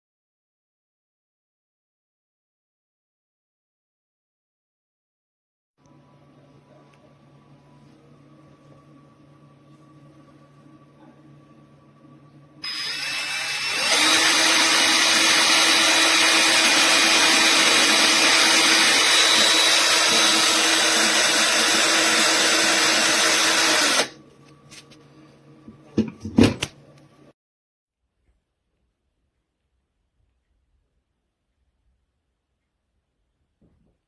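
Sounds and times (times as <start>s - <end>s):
power tool motor whine: 12.6s - 24.2s.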